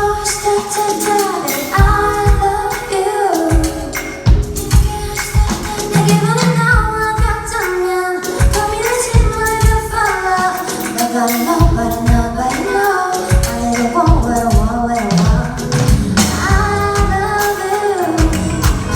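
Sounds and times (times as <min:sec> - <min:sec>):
woman singing pop song: 0:00.0 - 0:18.9
band playing: 0:15.1 - 0:18.9.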